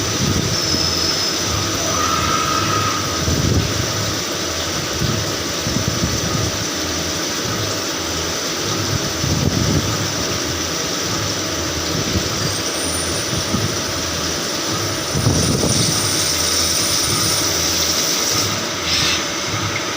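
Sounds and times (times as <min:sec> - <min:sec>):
thin high whine: 0:00.0 - 0:04.1
cnc machine running: 0:00.0 - 0:19.9.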